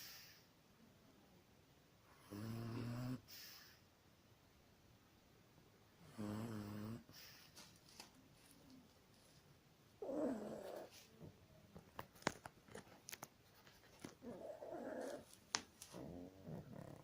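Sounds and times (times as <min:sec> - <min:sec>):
dog snoring: 0:02.2 - 0:03.7, 0:06.0 - 0:07.2, 0:10.0 - 0:10.9, 0:14.2 - 0:15.2, 0:15.9 - 0:17.0.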